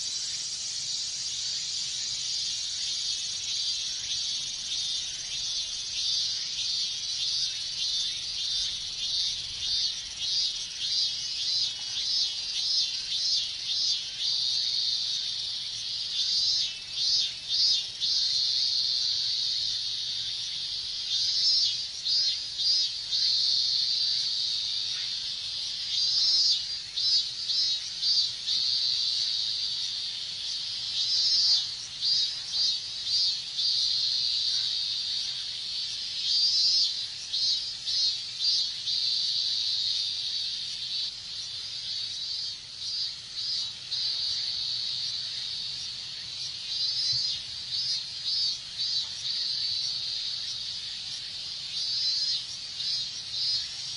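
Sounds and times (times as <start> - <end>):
cicadas buzzing: 0.0 - 53.9.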